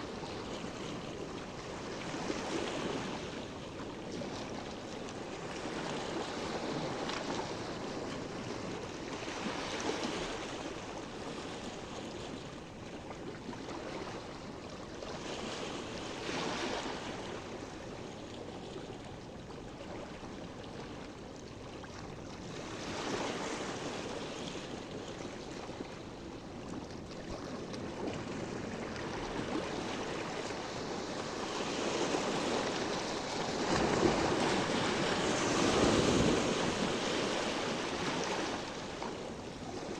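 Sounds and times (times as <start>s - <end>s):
sea waves washing in: 28.4s - 39.9s.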